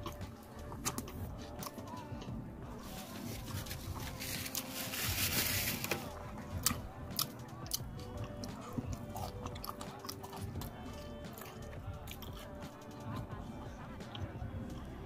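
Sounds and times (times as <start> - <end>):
chewing with wet mouth clicks: 0.0 - 2.4, 6.6 - 12.6
background music: 0.0 - 15.0
faint restaurant ambiance: 0.0 - 15.0.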